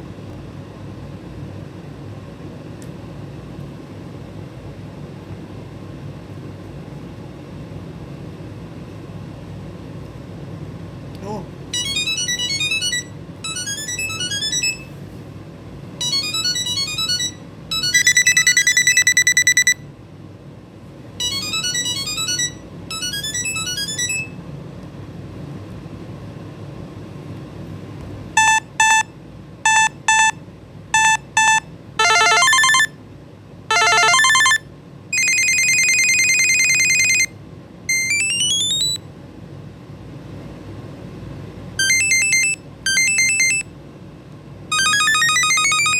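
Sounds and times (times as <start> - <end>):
electronic buzzer ring melodies: 11.8 - 14.9, 16.0 - 19.8, 21.2 - 24.4, 28.4 - 30.4, 31.0 - 32.9, 33.7 - 34.6, 35.2 - 37.3, 37.9 - 39.0, 41.8 - 43.6, 44.7 - 45.9.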